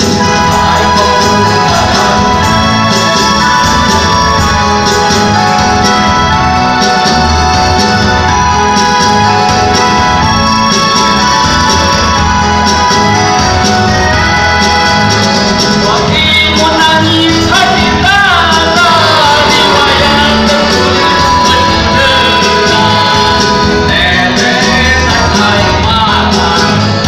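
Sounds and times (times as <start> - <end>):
instrumental pop music: 0.0 - 27.0
wavering melody line: 0.0 - 27.0.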